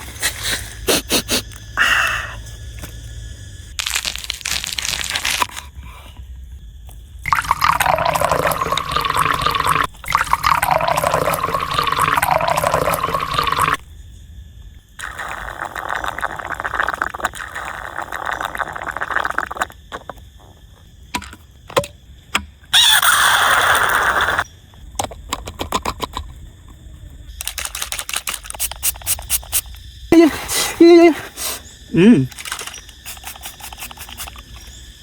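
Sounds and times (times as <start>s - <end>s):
liquid pouring and splashing: 7.3s - 13.8s.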